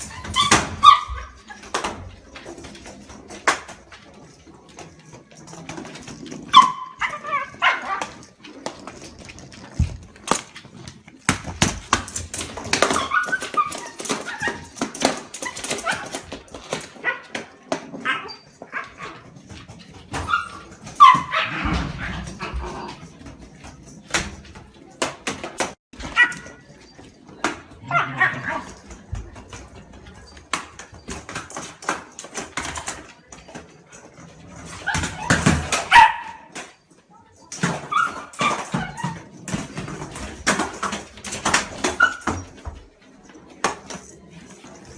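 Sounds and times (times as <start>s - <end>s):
dog barking and yipping: 0.0s - 1.6s, 6.4s - 8.3s, 17.0s - 17.4s, 20.2s - 22.2s, 27.8s - 28.8s, 34.7s - 36.5s.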